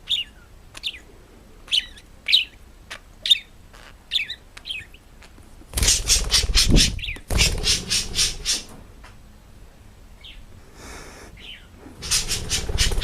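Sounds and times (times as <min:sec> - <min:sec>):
bird high chirps: 0:00.0 - 0:01.1, 0:01.7 - 0:08.7
rapid bird squawking: 0:05.8 - 0:08.7, 0:11.4 - 0:13.0.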